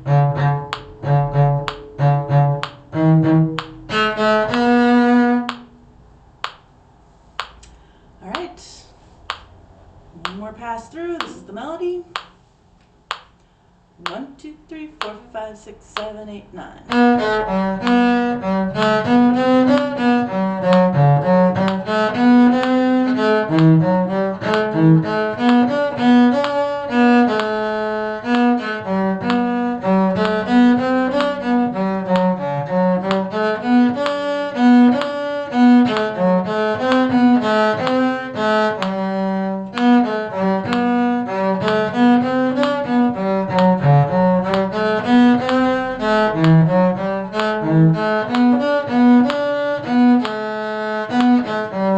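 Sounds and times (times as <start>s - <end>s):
violin melody: 0.0s - 5.8s, 16.9s - 51.9s
low cello line: 0.0s - 12.3s, 13.9s - 51.9s.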